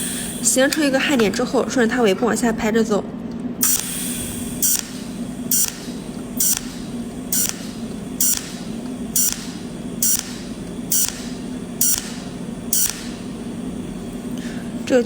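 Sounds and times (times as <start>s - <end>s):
low machine hum: 0.0s - 15.0s
welding arc hissing bursts: 3.6s - 14.8s.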